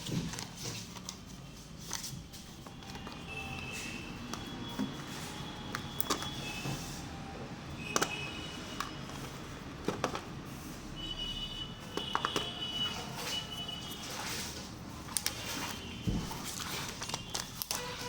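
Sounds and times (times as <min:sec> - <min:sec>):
packaging clicks and taps: 0:00.0 - 0:06.8, 0:07.8 - 0:10.4, 0:11.8 - 0:13.4, 0:15.0 - 0:18.0.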